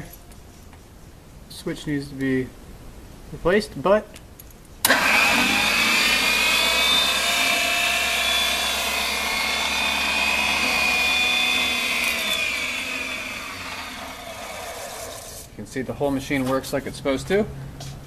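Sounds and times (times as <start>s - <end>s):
grinding wheel motor whining: 4.9s - 15.5s.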